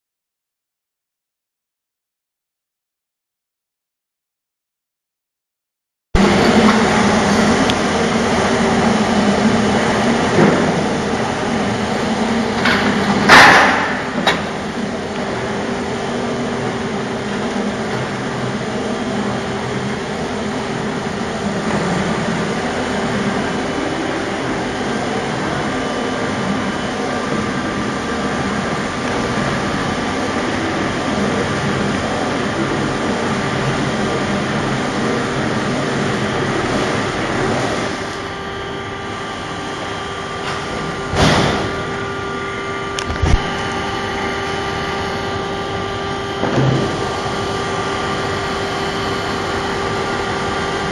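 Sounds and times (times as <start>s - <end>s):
loud burst of noise: 6.2s - 15.1s
lathe machine running: 6.2s - 50.9s.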